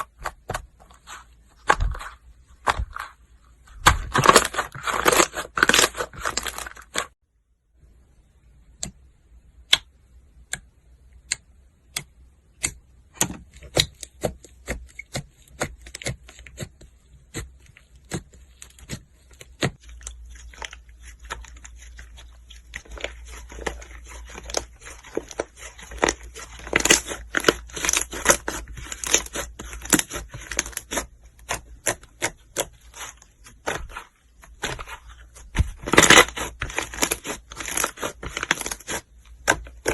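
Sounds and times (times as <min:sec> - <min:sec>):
slime clicking and crackling: 0:18.0 - 0:39.9.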